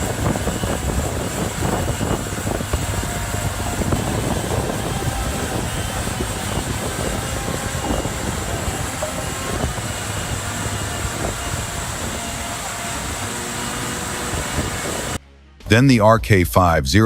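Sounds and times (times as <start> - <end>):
heavy machinery rumbling: 0.0 - 15.8.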